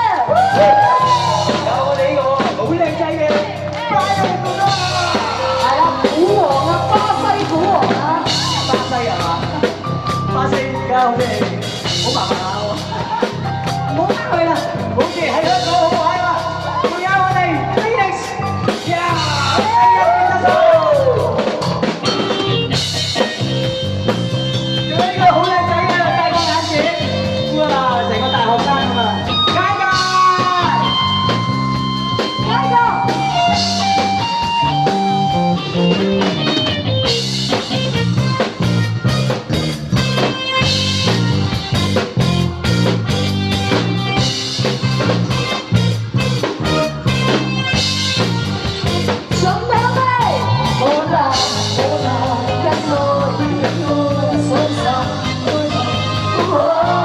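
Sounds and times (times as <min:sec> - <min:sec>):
upbeat rock song: 0:00.0 - 0:57.0
person singing: 0:49.3 - 0:57.0.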